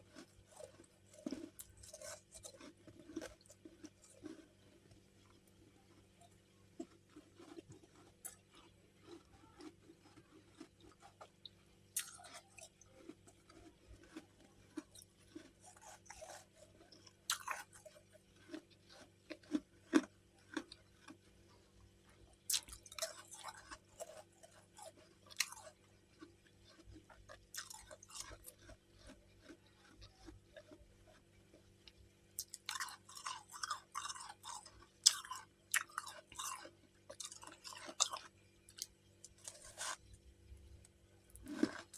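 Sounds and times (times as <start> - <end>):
frost crunched and chewed: 0.0 - 40.2, 40.8 - 41.9.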